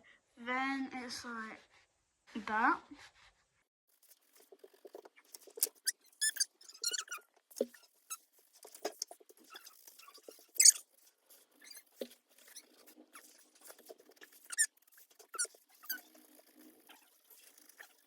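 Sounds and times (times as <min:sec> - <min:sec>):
pencil scratching on paper: 0:02.8 - 0:18.0.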